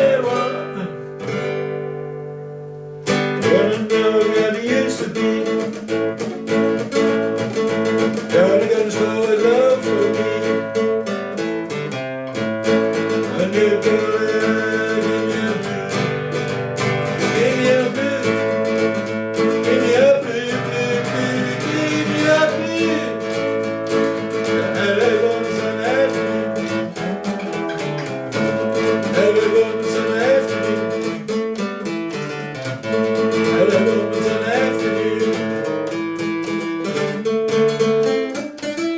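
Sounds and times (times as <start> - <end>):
acoustic guitar playing: 0.0 - 38.9
sliding melodic notes: 25.4 - 29.6.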